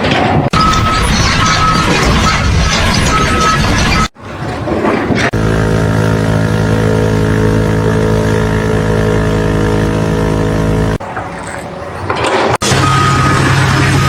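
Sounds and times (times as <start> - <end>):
loud machinery noise: 0.0 - 14.0
engine running steadily: 4.1 - 14.0.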